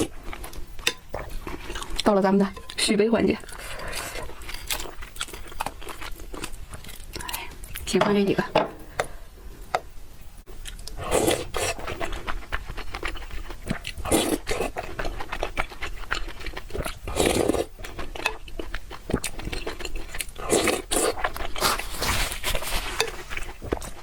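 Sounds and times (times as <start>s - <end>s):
biting and chewing: 3.5s - 7.4s, 10.6s - 24.0s
slurping: 10.9s - 17.7s, 19.2s - 24.0s.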